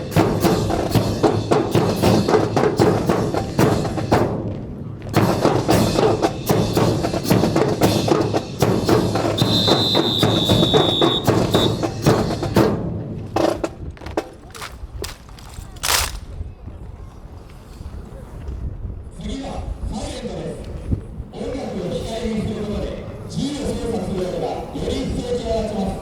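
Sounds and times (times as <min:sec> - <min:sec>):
marching drum corps: 0:00.0 - 0:15.1
high whistle-like tone: 0:09.4 - 0:11.8.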